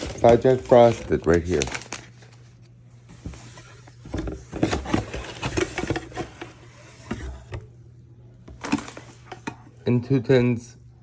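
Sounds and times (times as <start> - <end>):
packets and tins being handled: 0.0 - 6.6.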